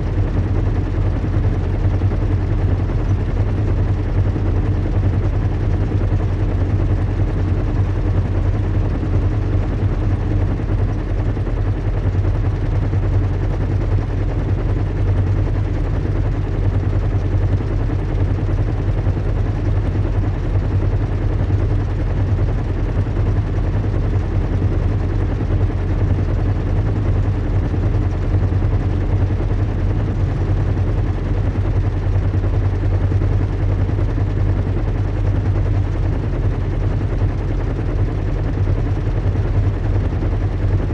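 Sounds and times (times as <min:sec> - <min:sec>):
engine and propeller hum: 0:00.0 - 0:40.9.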